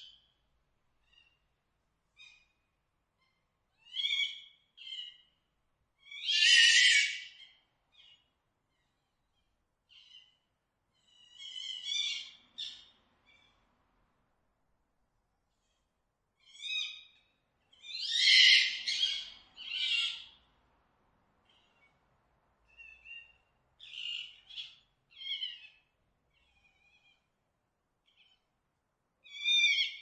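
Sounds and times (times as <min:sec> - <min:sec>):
fox calling: 0:06.1 - 0:08.2, 0:29.3 - 0:30.0
fox screaming: 0:06.2 - 0:07.3.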